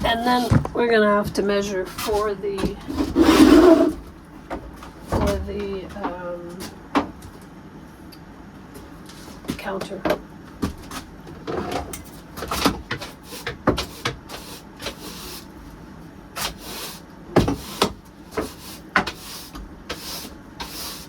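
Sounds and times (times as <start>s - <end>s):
knocks and clunks of building work: 2.6s - 7.3s.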